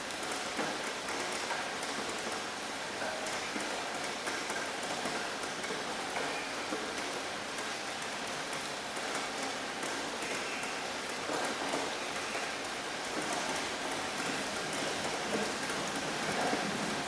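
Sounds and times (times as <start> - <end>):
steady rain patter: 0.0 - 17.0.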